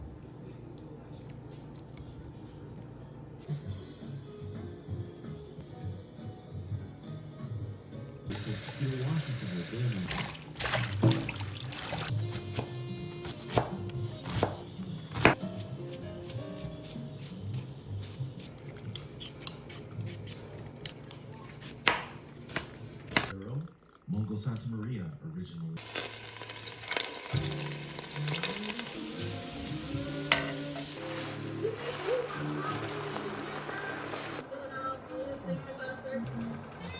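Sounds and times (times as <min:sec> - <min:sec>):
background music: 0:02.6 - 0:10.0, 0:11.8 - 0:18.5, 0:27.2 - 0:36.9
knife cutting leafy greens: 0:12.0 - 0:23.3
greens sizzling in a hot pan: 0:25.8 - 0:34.4.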